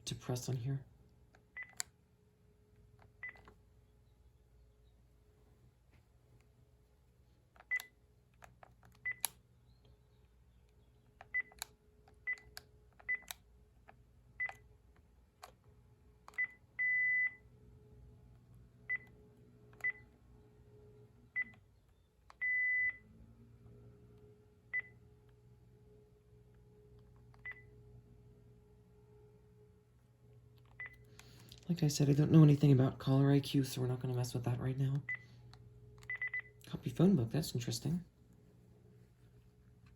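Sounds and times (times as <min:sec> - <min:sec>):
phone key beeps: 0:01.6 - 0:01.9, 0:03.2 - 0:03.5, 0:07.6 - 0:08.0, 0:09.0 - 0:09.3, 0:11.2 - 0:11.6, 0:12.2 - 0:13.4, 0:14.4 - 0:14.6, 0:16.3 - 0:17.4, 0:19.8 - 0:20.1, 0:21.4 - 0:21.6, 0:22.4 - 0:23.0, 0:27.4 - 0:27.7, 0:30.7 - 0:31.1, 0:36.0 - 0:36.6.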